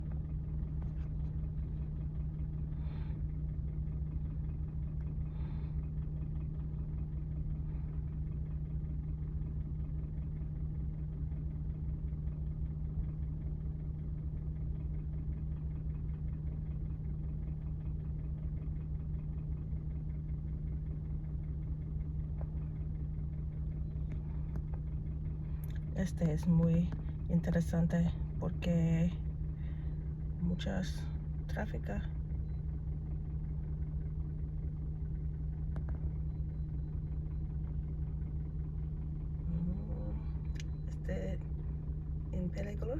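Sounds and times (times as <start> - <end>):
vehicle engine humming: 0.0 - 42.9.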